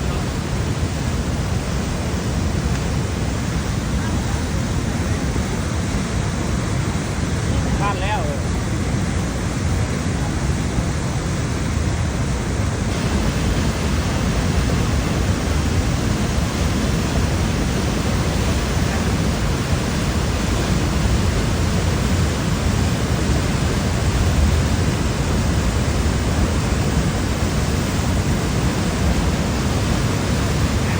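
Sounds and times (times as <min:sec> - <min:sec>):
floodwater rushing: 0:12.9 - 0:30.9.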